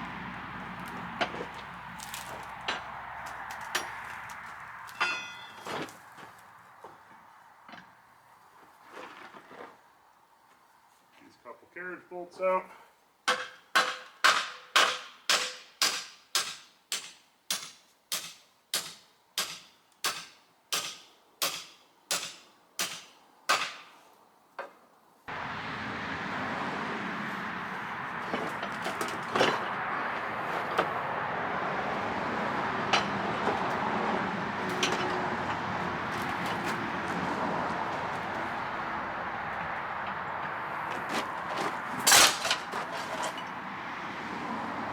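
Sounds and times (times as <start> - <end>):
scattered knocks: 27.3 - 31.1, 31.8 - 43.5
hammer striking bolts: 32.8 - 36.9.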